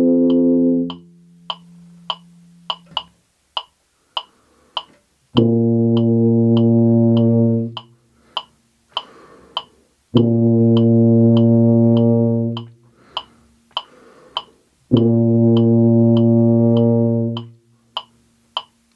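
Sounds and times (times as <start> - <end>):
tuba sustained note: 0.0 - 2.8, 5.4 - 7.8, 10.2 - 12.8, 14.9 - 17.6
metronome ticking: 0.0 - 18.9.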